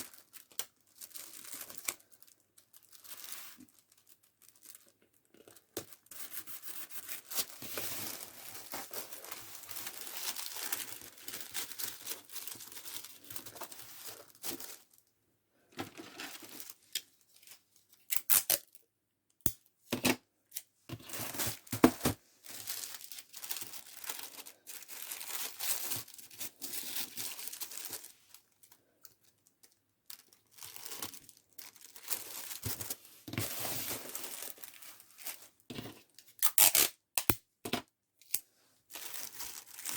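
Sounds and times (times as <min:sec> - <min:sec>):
packing material crinkling and tearing: 0:00.0 - 0:15.0, 0:21.0 - 0:29.5, 0:30.1 - 0:37.4, 0:38.9 - 0:39.9.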